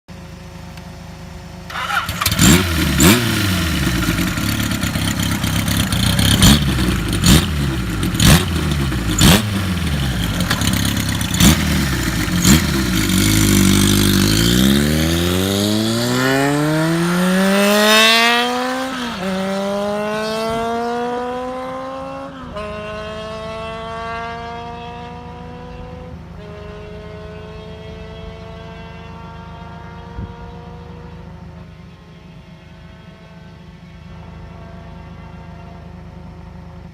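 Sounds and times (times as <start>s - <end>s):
motorcycle engine revving: 1.6s - 35.6s
motorcycle pulling away shifting gears: 1.7s - 31.6s.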